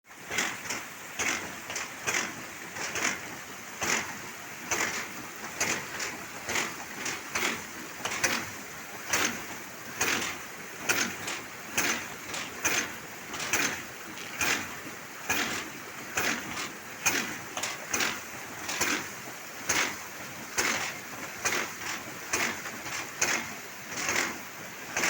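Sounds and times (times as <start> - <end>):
pump valve clacking: 0.2 - 25.0.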